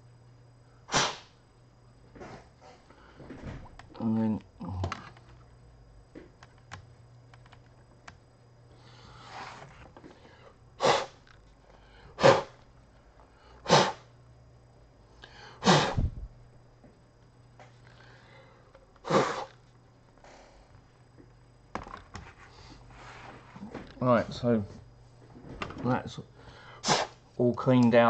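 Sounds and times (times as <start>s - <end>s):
puffs of compressed air: 0.9s - 1.3s, 26.7s - 27.2s.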